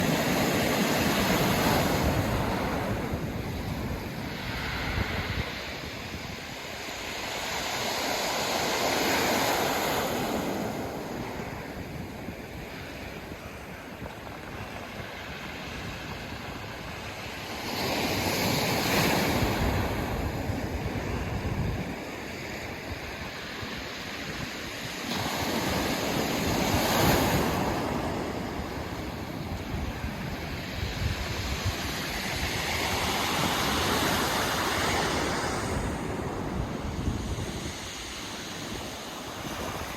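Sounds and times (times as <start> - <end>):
wind on microphone: 0.0 - 39.9
waves breaking on pebble beach: 17.0 - 39.9.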